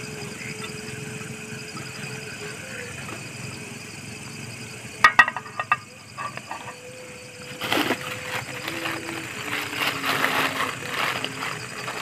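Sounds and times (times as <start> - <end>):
low hum: 0.0 - 12.0
light clinks and knocks: 5.1 - 6.8.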